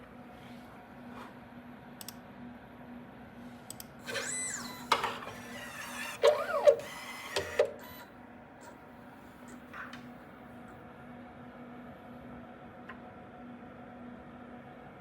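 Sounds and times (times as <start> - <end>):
stepper motors whining: 4.0 - 8.1.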